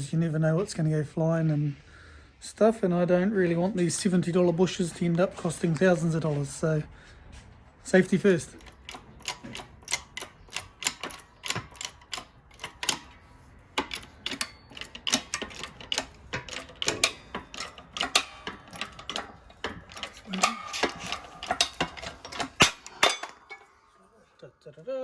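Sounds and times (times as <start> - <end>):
sharp metallic clicks: 8.3 - 23.7.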